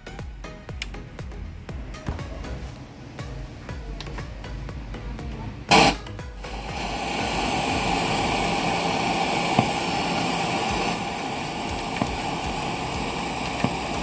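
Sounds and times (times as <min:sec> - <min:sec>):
radio static hissing: 0:01.8 - 0:14.0
loud short burst: 0:05.7 - 0:13.0.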